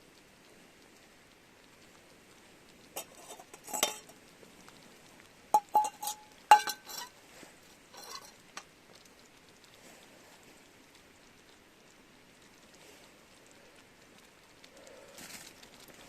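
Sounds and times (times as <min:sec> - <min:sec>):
metal utensils clinking on cookware: 0:03.0 - 0:04.1, 0:05.6 - 0:07.2, 0:07.9 - 0:08.6.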